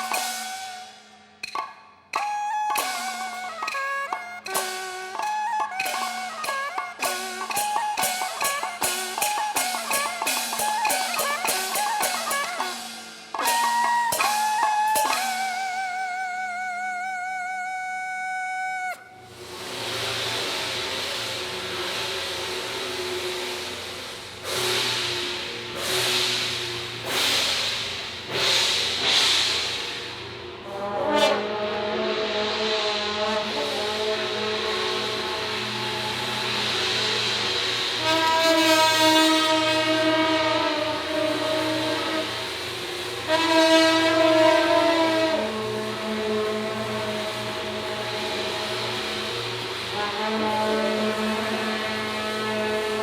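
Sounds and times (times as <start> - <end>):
ringing cymbal crashes: 0.0 - 16.2, 19.1 - 53.0
sliding melody: 0.0 - 19.0
rapid percussion strikes: 0.0 - 53.0
brassy wind instrument note: 38.0 - 42.6.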